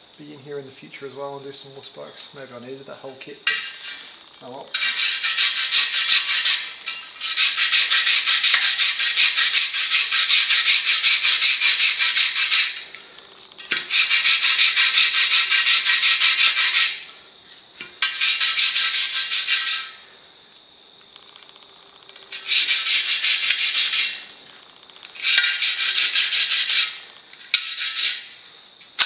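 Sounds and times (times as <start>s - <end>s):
wire brush scrubbing metal rim: 3.4s - 13.0s, 13.6s - 17.1s, 18.0s - 20.0s, 22.3s - 24.3s, 25.2s - 28.4s.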